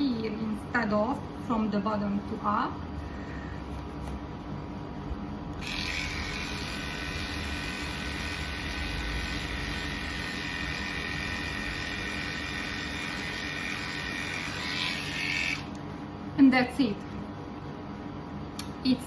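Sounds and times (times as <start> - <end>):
electric pet clippers buzzing: 5.5 - 15.8.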